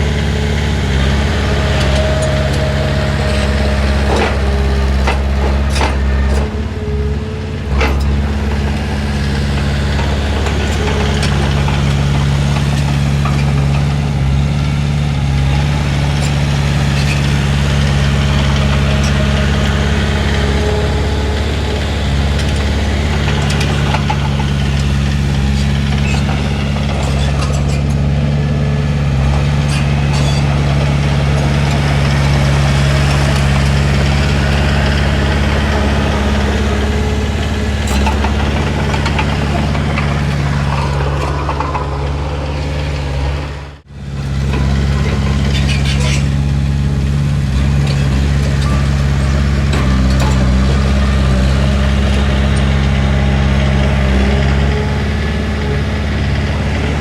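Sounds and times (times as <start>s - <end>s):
bulldozer diesel engine running: 0.0s - 57.0s
short metal clanks: 29.6s - 30.5s.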